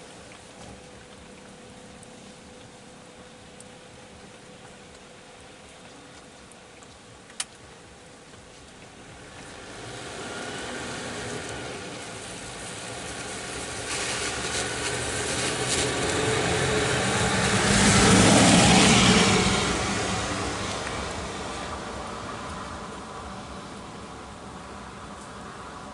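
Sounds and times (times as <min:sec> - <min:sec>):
vehicle engine and tyres passing: 0:09.0 - 0:25.9.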